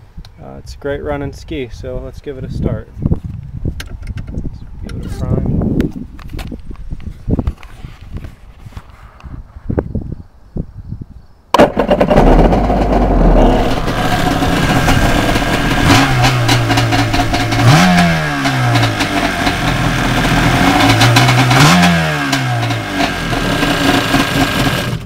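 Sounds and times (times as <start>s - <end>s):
jet ski engine revving: 11.6s - 25.0s.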